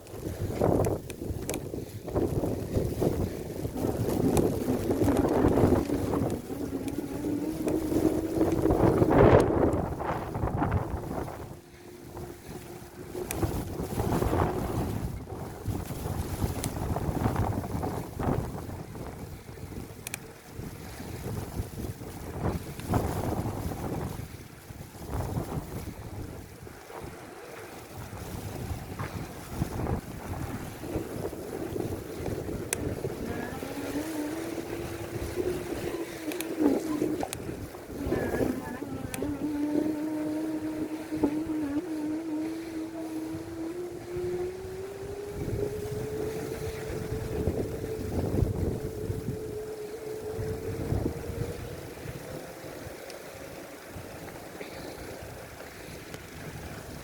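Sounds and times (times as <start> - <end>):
bicycle road rumble: 0.0 - 57.0
wind buffeting microphone: 0.0 - 57.0
steady hum: 32.6 - 52.3.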